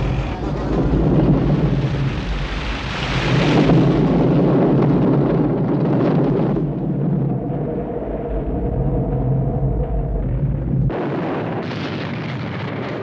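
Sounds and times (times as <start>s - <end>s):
rumbling crash: 0.0s - 13.0s.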